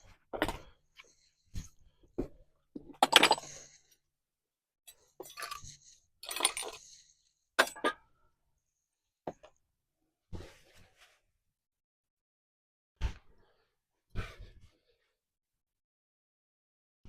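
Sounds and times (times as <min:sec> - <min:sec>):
metallic clinks and clatter: 0:04.9 - 0:07.0.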